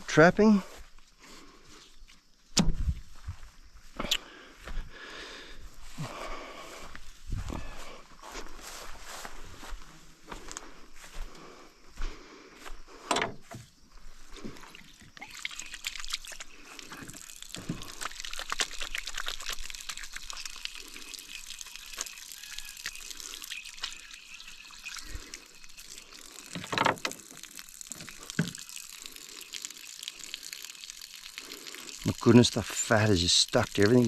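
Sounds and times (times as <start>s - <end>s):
water running and splashing: 14.2s - 34.0s.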